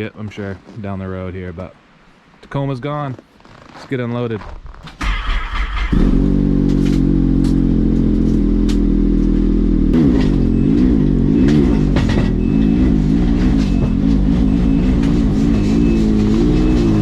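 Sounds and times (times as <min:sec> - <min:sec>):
vehicle engine revving: 0:05.0 - 0:17.0.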